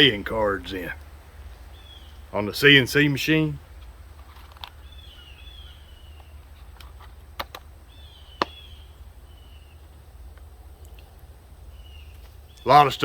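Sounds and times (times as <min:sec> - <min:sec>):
low steady hum: 0:00.0 - 0:13.0
sharp clicks and knocks: 0:06.6 - 0:07.7.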